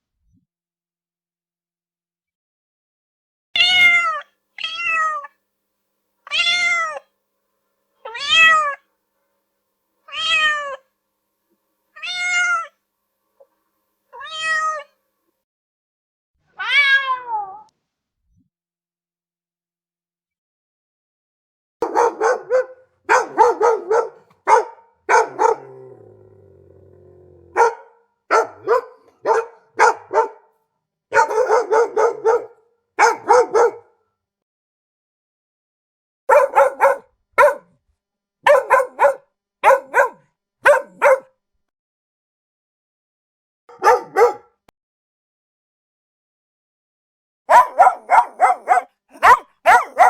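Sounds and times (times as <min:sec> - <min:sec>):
dog barking: 0:21.8 - 0:26.0, 0:27.5 - 0:34.0, 0:36.3 - 0:37.8, 0:38.4 - 0:41.3, 0:43.7 - 0:44.6, 0:47.5 - 0:50.0.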